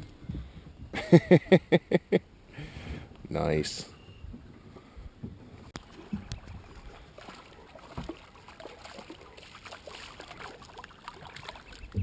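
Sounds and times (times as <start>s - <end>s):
river water trickling: 5.6s - 12.0s.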